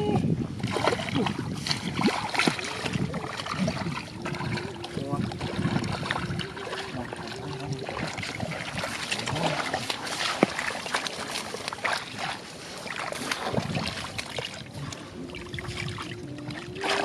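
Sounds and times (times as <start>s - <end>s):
splashing in muddy water: 0.0s - 17.0s.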